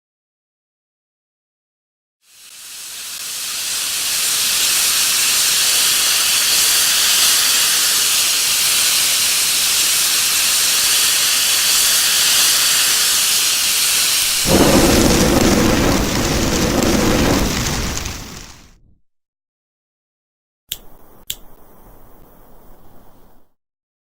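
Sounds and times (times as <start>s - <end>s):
gas hissing: 2.3s - 18.8s
deep loud rushing: 14.4s - 19.0s.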